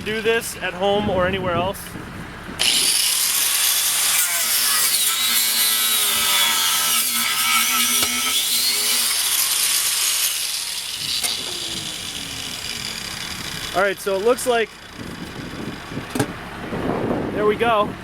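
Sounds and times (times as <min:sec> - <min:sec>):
angle grinder cutting rubber: 0:02.6 - 0:15.7.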